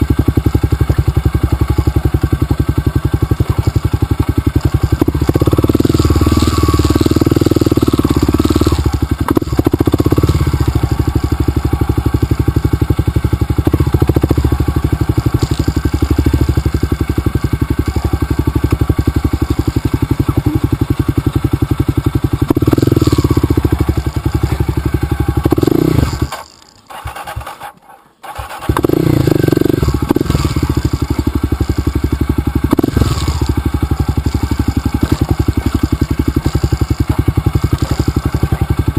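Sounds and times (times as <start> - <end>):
dirt bike engine running: 0.0 - 38.9.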